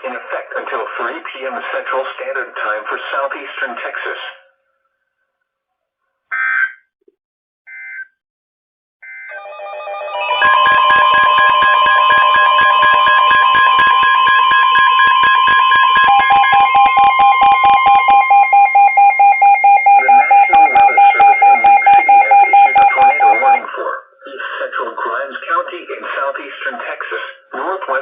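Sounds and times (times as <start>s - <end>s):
steady alarm tone: 9.0s - 23.6s
lower pulsing beep: 10.5s - 23.6s
alert data bursts: 11.2s - 23.6s.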